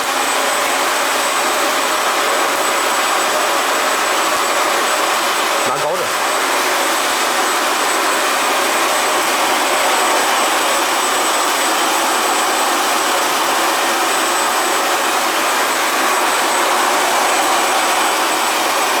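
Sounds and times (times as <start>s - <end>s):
thin high whine: 5.6s - 19.0s
spark machine rushing hiss: 14.8s - 19.0s.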